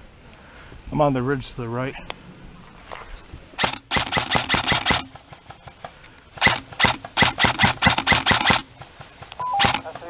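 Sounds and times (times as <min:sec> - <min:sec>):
airsoft gun firing single shots: 0:03.6 - 0:05.1, 0:06.4 - 0:08.8, 0:09.4 - 0:10.0.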